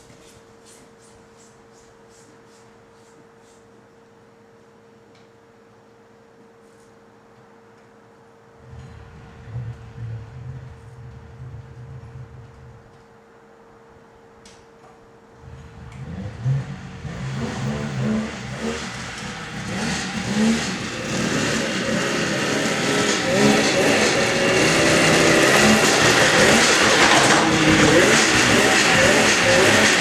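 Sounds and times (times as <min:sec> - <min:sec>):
snowmobile engine revving unevenly: 0:15.4 - 0:30.0.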